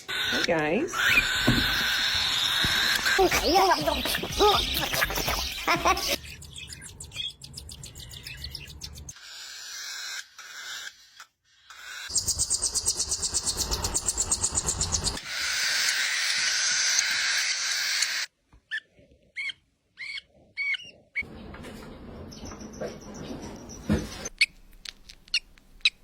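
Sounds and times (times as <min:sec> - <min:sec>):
young parrot chirping: 0:00.1 - 0:09.4, 0:18.7 - 0:21.0.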